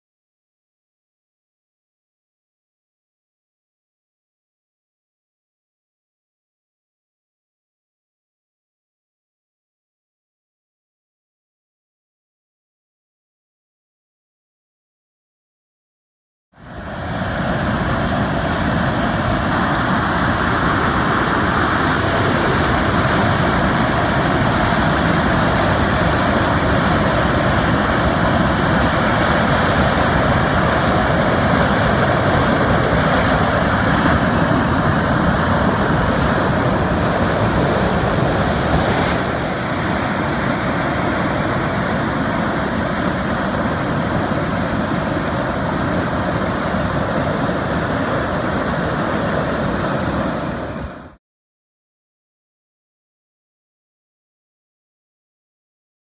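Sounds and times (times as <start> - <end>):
waterfall roar: 16.7 - 51.2.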